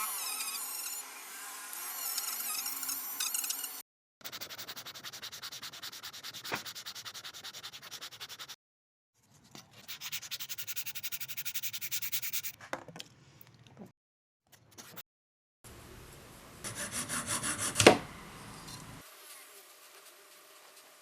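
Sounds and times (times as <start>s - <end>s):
wood being sanded by hand: 4.3s - 8.6s, 16.7s - 17.9s.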